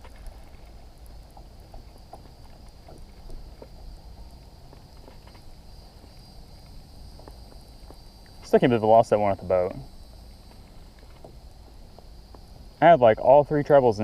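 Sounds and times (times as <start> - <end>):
faint light ticks: 0.0 - 8.4
insects droning: 0.0 - 14.0.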